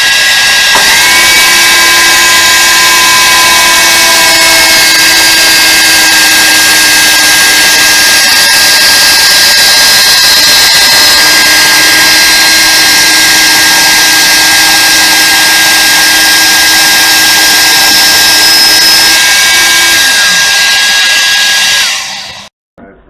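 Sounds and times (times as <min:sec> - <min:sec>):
power tool high whine: 0:00.0 - 0:22.5.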